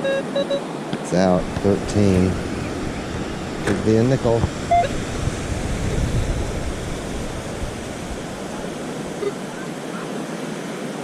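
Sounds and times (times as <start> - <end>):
ocean surf on beach: 0.0 - 11.0
wind buffeting microphone: 1.3 - 9.6.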